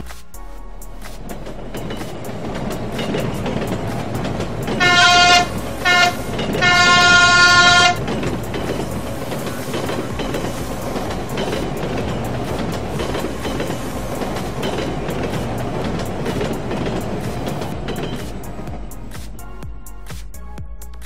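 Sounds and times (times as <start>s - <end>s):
train wheels clicking over rails: 1.0s - 19.6s
train horn blasts: 4.7s - 8.1s.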